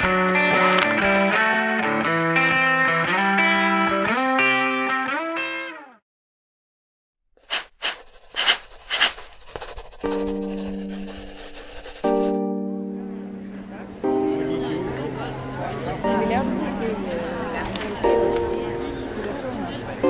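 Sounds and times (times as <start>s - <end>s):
short sharp noise bursts: 7.4s - 9.5s.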